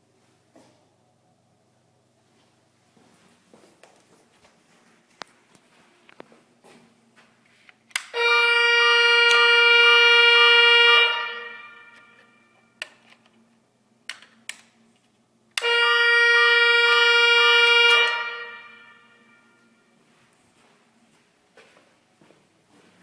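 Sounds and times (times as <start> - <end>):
loud horn-like fire alarm: 8.0 - 12.8, 15.5 - 20.0.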